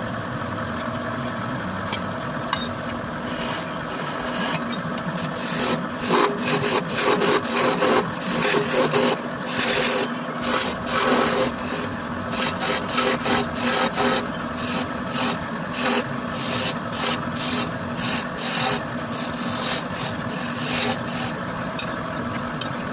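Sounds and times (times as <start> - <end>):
lathe humming: 0.0 - 22.9
tool scraping spinning wood: 3.2 - 22.0.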